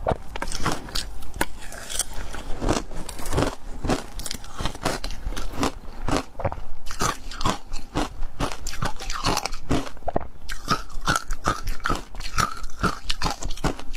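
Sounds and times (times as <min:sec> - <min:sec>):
ice being chewed: 0:00.4 - 0:13.9.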